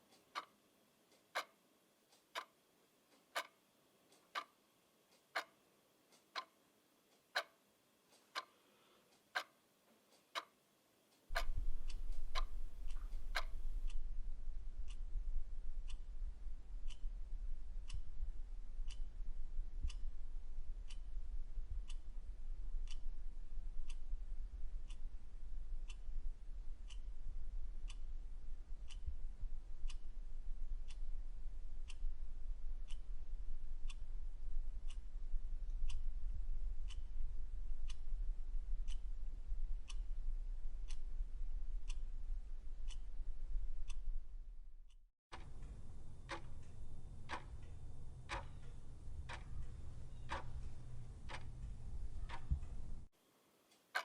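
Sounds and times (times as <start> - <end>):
clock ticking: 0.0 - 8.6, 9.2 - 10.6, 11.3 - 44.2, 44.9 - 53.1
low steady hum: 11.3 - 53.1.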